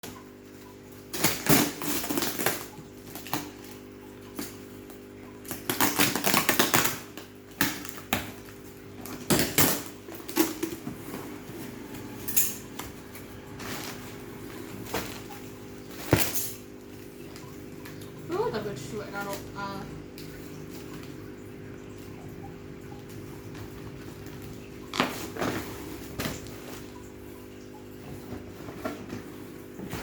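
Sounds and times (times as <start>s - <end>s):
items clattering and rustling: 7.6s - 19.5s, 23.0s - 30.0s.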